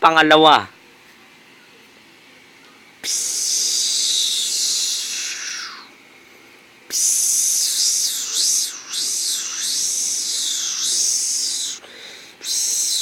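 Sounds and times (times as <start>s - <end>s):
person hissing with mouth: 3.0s - 5.9s, 6.9s - 13.0s.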